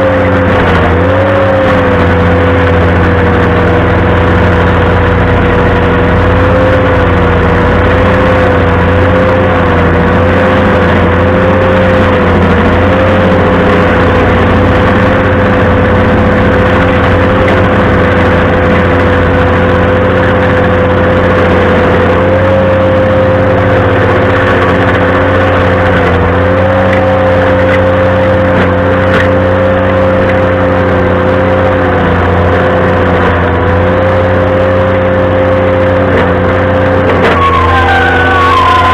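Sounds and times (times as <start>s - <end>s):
compact tractor running: 0.0s - 38.9s
loud high squeal: 37.1s - 38.9s.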